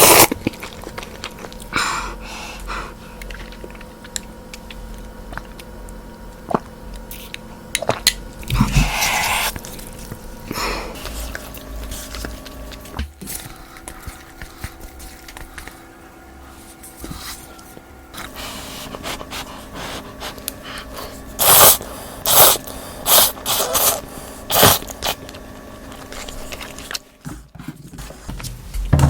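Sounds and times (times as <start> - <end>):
soft chewing: 2.6 - 5.8
loud short slurps: 18.2 - 25.2.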